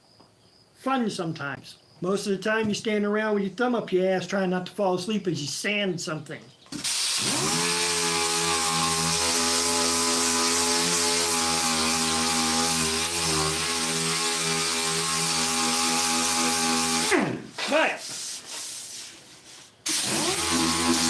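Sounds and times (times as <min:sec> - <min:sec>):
sander whining: 0:07.2 - 0:17.5, 0:19.9 - 0:21.0.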